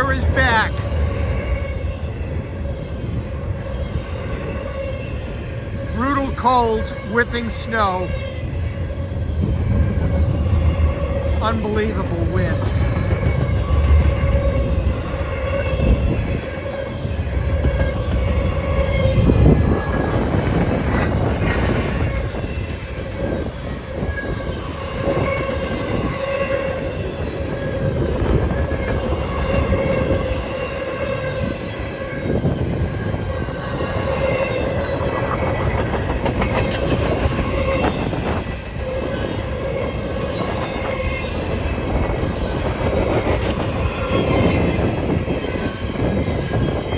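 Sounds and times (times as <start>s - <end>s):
wind buffeting microphone: 7.7s - 11.4s, 12.2s - 46.9s
train wheels clacking on rails: 12.5s - 46.9s.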